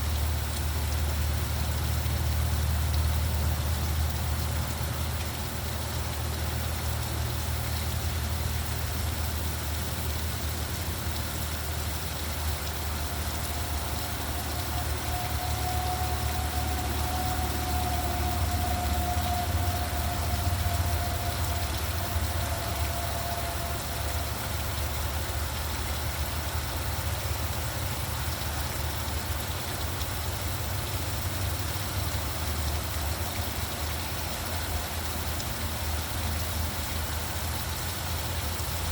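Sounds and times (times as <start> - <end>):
rain hiss: 0.0 - 38.9
road traffic rumble: 0.0 - 38.9
faint thin whine: 7.6 - 25.8.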